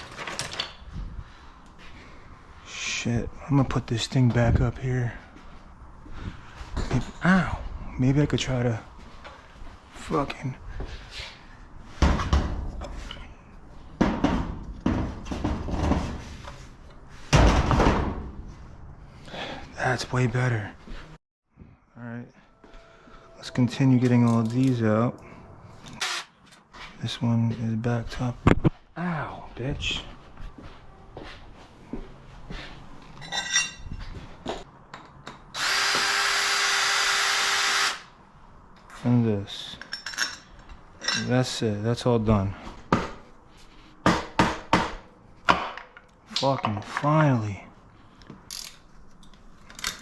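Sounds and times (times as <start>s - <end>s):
tools clicking and knocking: 0.0s - 0.9s, 34.9s - 35.6s, 48.2s - 50.0s
rattling and handling noise: 0.0s - 2.0s, 48.2s - 50.0s
power drill running: 26.0s - 26.3s, 35.6s - 38.1s.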